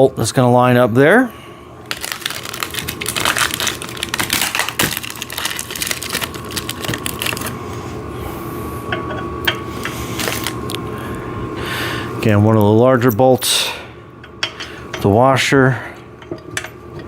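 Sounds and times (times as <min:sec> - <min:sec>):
metal parts clattering: 0:01.9 - 0:07.5.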